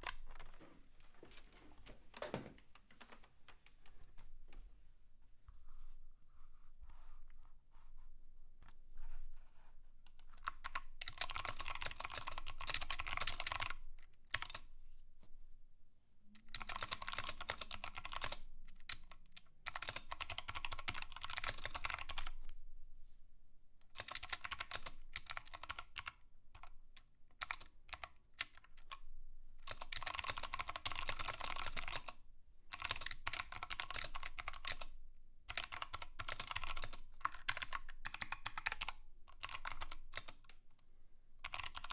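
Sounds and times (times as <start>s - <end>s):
mechanical keyboard typing: 10.2s - 14.6s, 16.4s - 22.4s, 24.0s - 26.7s, 27.4s - 29.0s, 29.6s - 34.9s, 35.5s - 40.6s, 41.4s - 41.9s.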